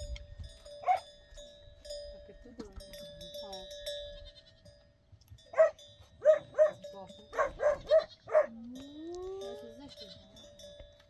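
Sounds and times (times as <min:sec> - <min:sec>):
dog barking: 0:00.8 - 0:01.1, 0:05.5 - 0:08.6.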